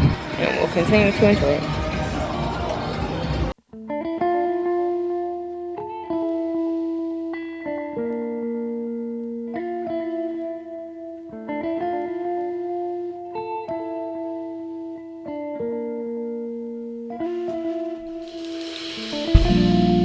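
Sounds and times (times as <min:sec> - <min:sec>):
clean guitar picking: 0:03.7 - 0:20.0.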